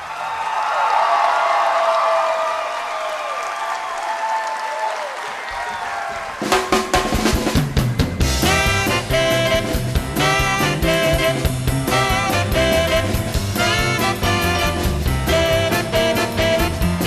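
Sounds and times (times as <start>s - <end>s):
drum passage: 6.1s - 17.0s
swing band playing: 6.4s - 17.0s.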